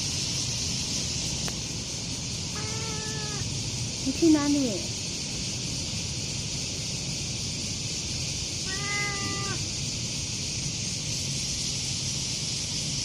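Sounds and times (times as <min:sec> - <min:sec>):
steady high hiss: 0:00.0 - 0:13.0
cat meowing: 0:02.5 - 0:03.5, 0:08.6 - 0:09.6.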